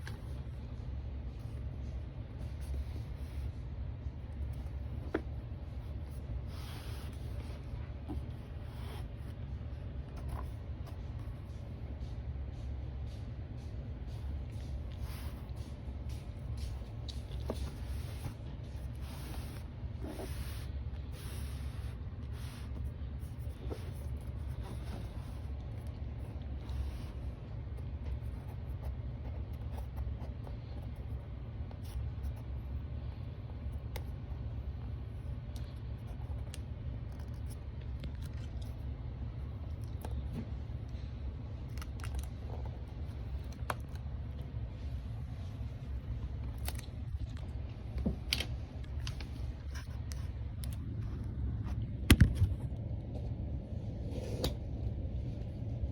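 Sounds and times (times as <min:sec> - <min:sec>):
steady low hum: 0:00.0 - 0:55.9.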